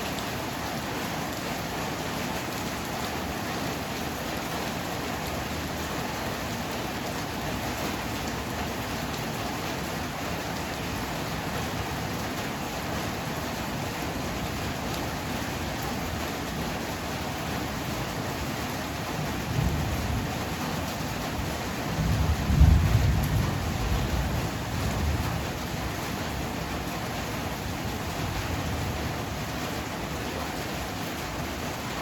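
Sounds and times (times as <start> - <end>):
heavy rain: 0.0 - 32.0
thunder rumbling: 21.9 - 25.4.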